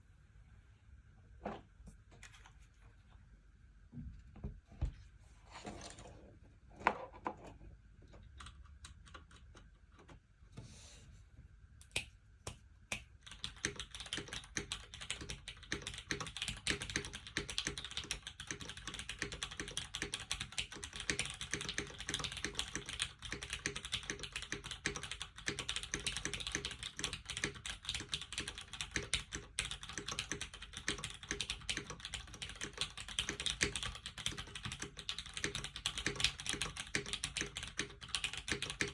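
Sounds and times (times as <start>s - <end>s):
mechanical keyboard typing: 8.2s - 10.2s, 13.2s - 38.9s.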